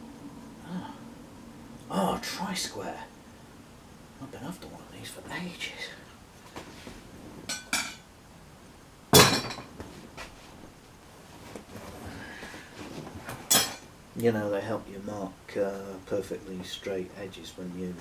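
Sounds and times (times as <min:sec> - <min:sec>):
metal hand tools clinking: 0:13.5 - 0:13.8.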